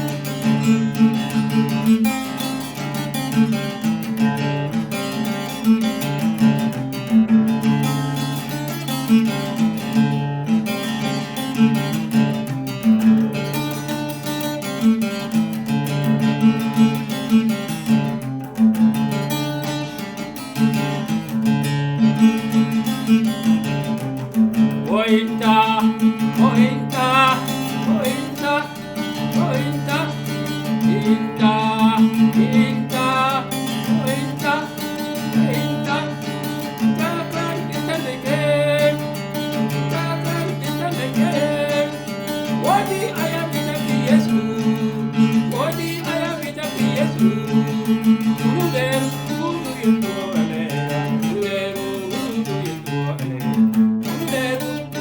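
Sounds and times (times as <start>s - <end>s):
guitar music with steady beat: 0.0s - 55.0s
person singing: 22.2s - 55.0s.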